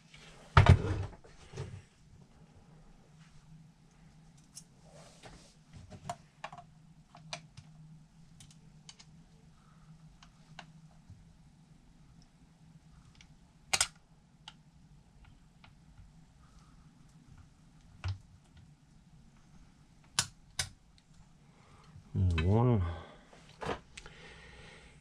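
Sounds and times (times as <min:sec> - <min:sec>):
faint low hum: 0:00.0 - 0:25.0
small plastic parts clicking: 0:13.1 - 0:14.6.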